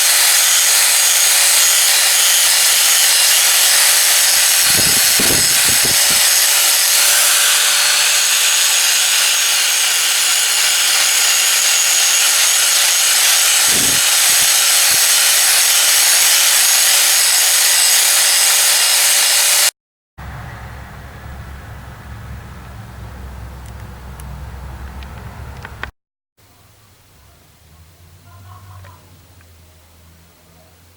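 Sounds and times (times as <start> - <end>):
power grinder on metal: 0.0 - 19.7.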